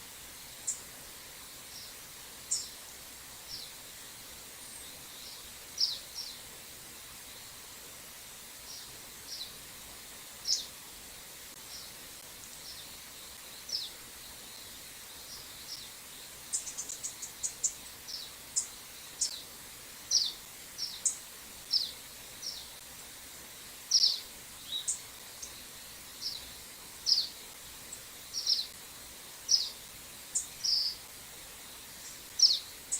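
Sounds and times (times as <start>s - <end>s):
birds calling: 26.2s - 28.8s, 29.5s - 29.8s, 30.4s - 31.0s, 32.0s - 32.7s.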